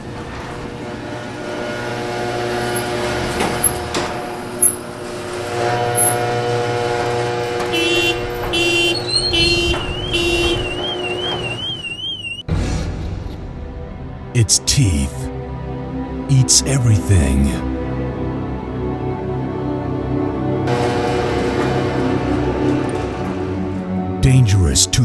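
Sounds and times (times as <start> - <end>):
garage door grinding and squealing: 0.0 - 12.5, 20.7 - 24.0
car alarm beeping and wailing: 7.7 - 12.5.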